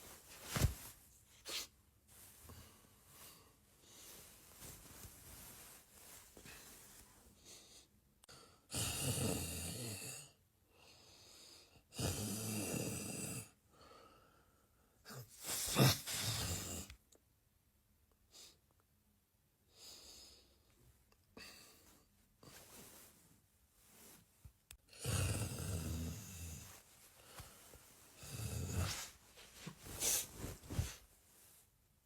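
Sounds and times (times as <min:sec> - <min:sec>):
quiet breaths: 0:00.0 - 0:08.7, 0:10.2 - 0:11.9, 0:13.0 - 0:17.2, 0:19.6 - 0:32.0
person snoring: 0:08.7 - 0:10.4, 0:11.9 - 0:13.5, 0:24.9 - 0:26.8, 0:28.2 - 0:29.1.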